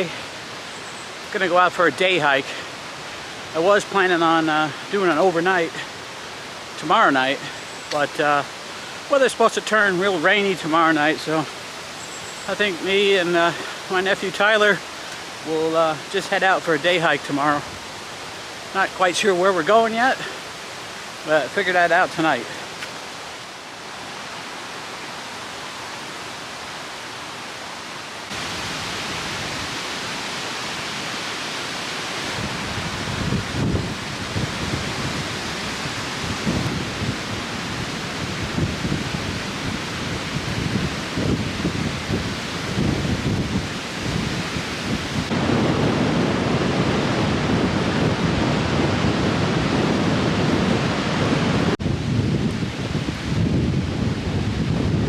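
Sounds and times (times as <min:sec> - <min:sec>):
wind blowing over microphone: 0:01.3 - 0:23.1, 0:28.3 - 0:30.9, 0:32.1 - 0:55.0
strong wind rushing: 0:32.1 - 0:55.0
wind buffeting microphone: 0:32.2 - 0:55.0.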